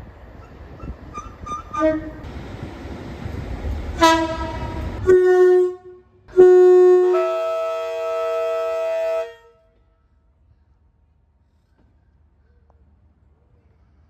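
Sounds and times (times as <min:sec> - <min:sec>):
train horn blasts: 0:01.1 - 0:02.3, 0:04.0 - 0:09.8.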